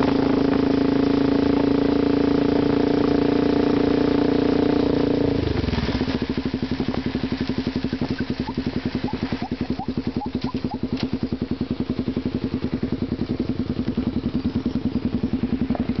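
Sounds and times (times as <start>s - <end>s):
motorcycle engine idling: 0.0s - 16.0s.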